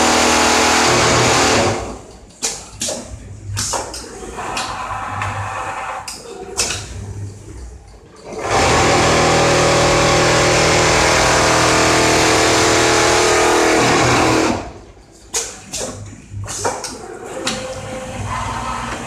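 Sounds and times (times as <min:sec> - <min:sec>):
sewing machine running: 0:00.0 - 0:02.0, 0:08.2 - 0:14.8.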